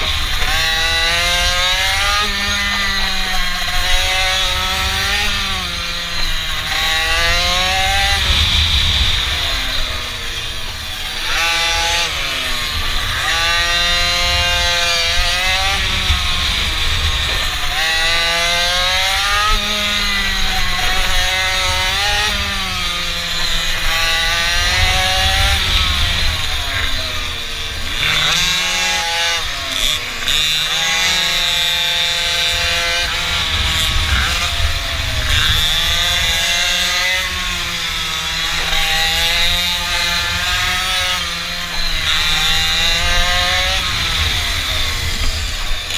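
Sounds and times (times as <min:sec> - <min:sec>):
mini-bike engine revving: 0:00.0 - 0:45.9
wind rumble on microphone: 0:11.6 - 0:18.8, 0:23.9 - 0:28.2, 0:32.2 - 0:37.8.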